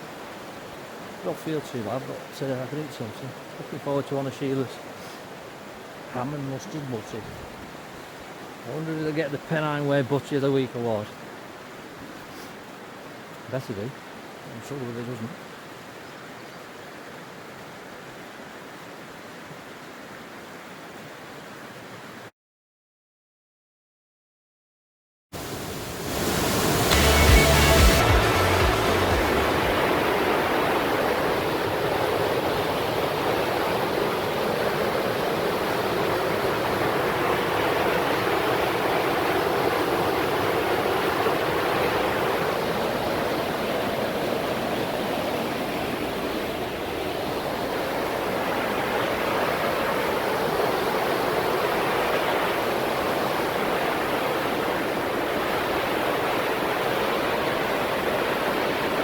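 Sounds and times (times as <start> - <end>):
waterfall rushing: 25.4 - 59.0.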